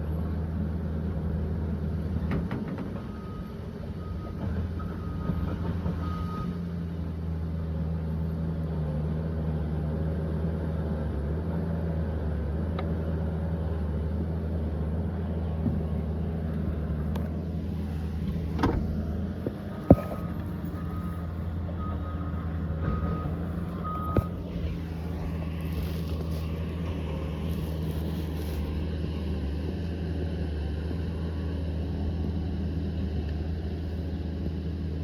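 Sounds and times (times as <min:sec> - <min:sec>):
diesel engine running: 0:00.0 - 0:35.0
faint reversing alarm beeps: 0:03.0 - 0:06.8, 0:19.7 - 0:24.8.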